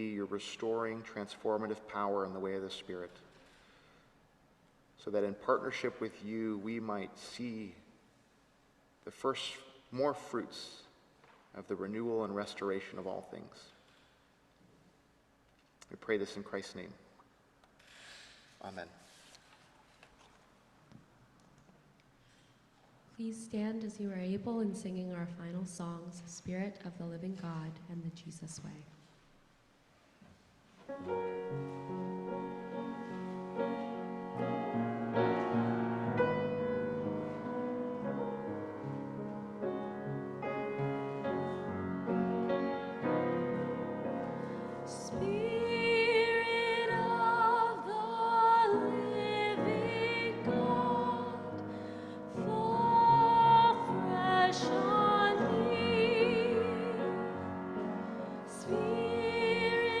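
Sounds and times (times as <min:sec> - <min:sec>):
keyboard playing sustained chords: 0:31.0 - 0:47.4
voices singing a hymn: 0:43.5 - 1:00.0.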